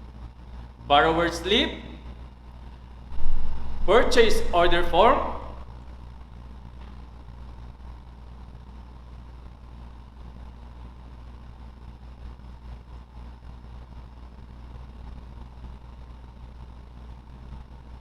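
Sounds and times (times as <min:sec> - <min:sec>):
low hum: 0:00.9 - 0:08.2.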